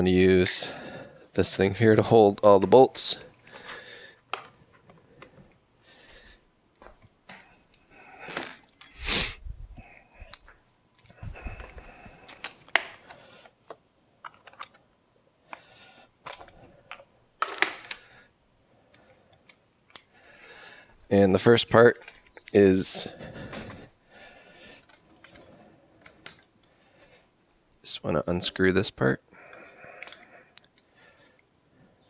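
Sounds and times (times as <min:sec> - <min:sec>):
metal parts clicking and clinking: 0:08.3 - 0:09.0, 0:14.2 - 0:14.8, 0:16.2 - 0:18.1, 0:24.8 - 0:26.8, 0:30.0 - 0:30.8.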